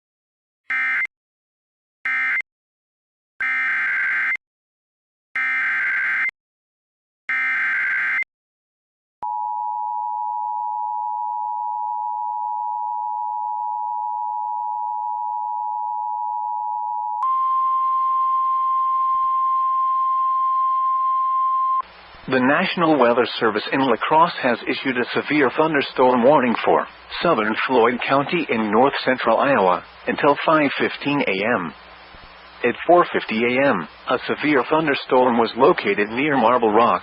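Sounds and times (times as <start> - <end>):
steady two-tone attention signal: 9.2 - 21.8
radio hiss: 21.8 - 37.0.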